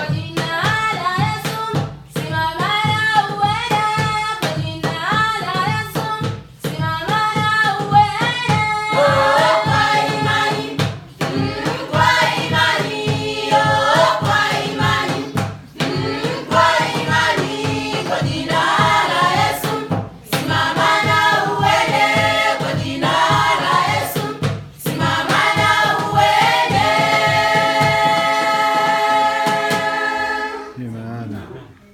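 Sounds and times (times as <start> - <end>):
backing music: 6.9 - 30.9
choir singing: 8.9 - 30.8.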